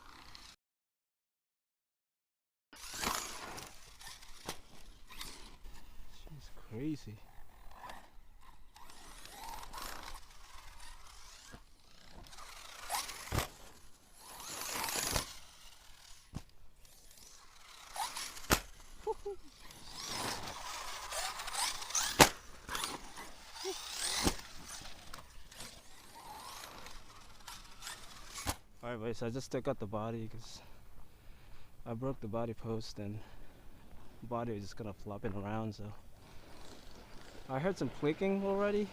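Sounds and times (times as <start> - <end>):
rc car motor whining: 0.0 - 0.6, 2.8 - 28.7, 36.0 - 38.9.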